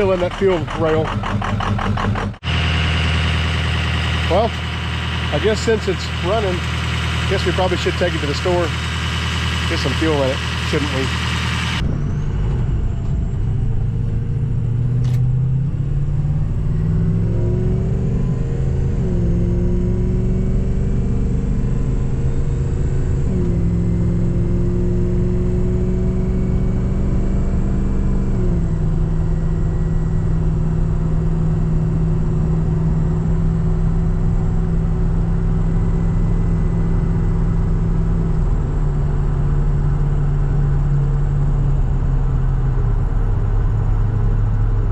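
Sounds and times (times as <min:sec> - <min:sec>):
diesel truck engine running: 0:00.0 - 0:44.9.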